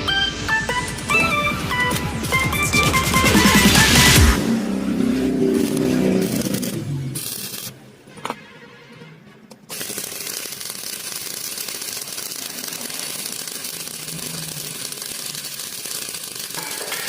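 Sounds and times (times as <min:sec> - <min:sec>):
arc welding crackle: 0:05.4 - 0:07.8, 0:09.7 - 0:17.0.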